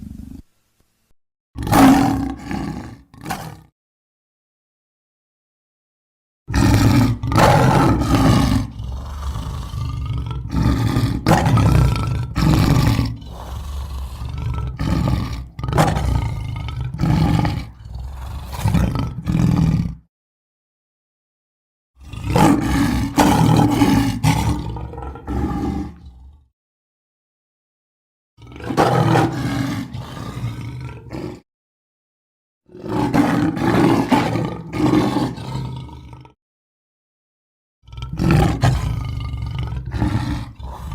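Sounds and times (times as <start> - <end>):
cougar roaring calls: 1.6 - 3.7, 6.5 - 19.9, 22.0 - 26.4, 28.4 - 31.4, 37.9 - 40.9.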